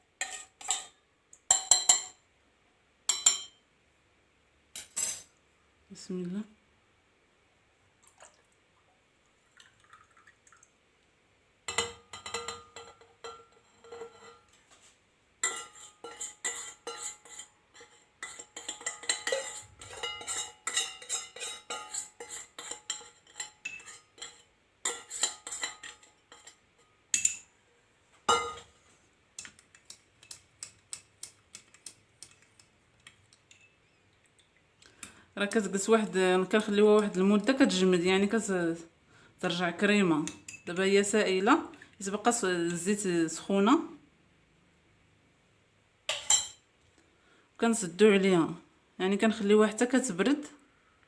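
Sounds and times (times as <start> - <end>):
metal spoon clinking on glass: 0.2 - 2.2, 3.1 - 3.6, 4.8 - 5.3, 11.7 - 14.4, 15.4 - 27.5, 28.3 - 28.7, 33.4 - 34.0, 40.2 - 40.7, 46.1 - 46.6.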